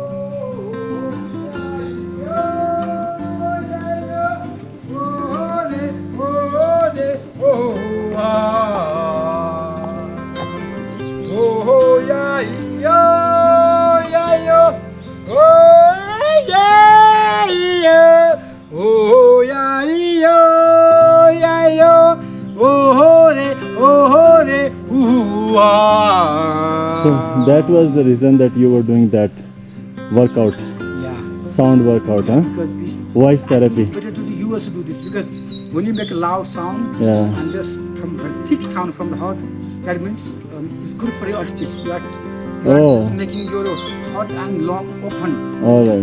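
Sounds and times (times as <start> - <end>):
plucked guitar-like strings: 0.0 - 17.8, 21.0 - 46.0
man singing: 0.0 - 29.4, 30.1 - 46.0
sliding melody over held chords: 0.9 - 19.1, 30.0 - 46.0.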